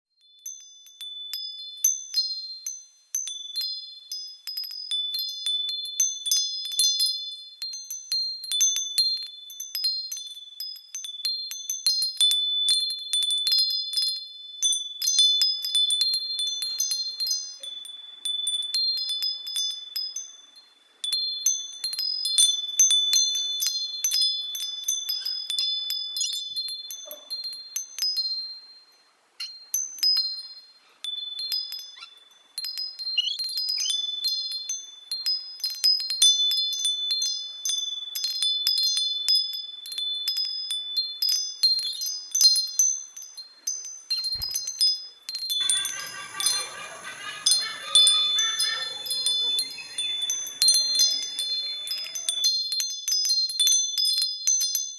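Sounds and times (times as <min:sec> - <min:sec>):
high chime ringing: 0:45.6 - 0:52.7.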